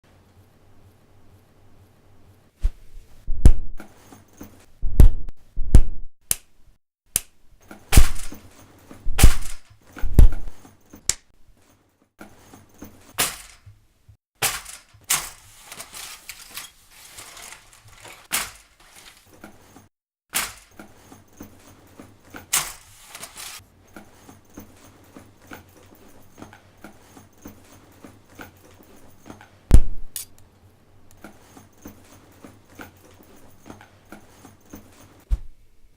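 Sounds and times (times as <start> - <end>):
scraping and clattering: 14.4 - 25.6.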